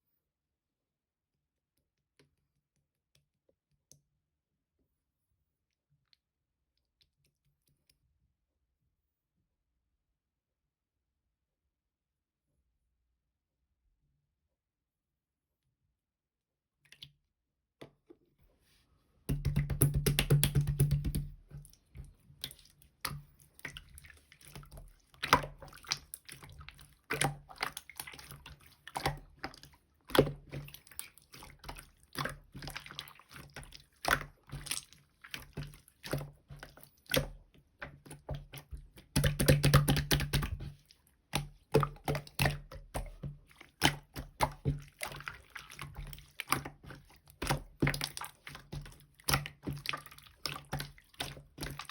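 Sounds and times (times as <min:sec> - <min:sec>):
slime squished by hand: 0:19.3 - 0:51.9.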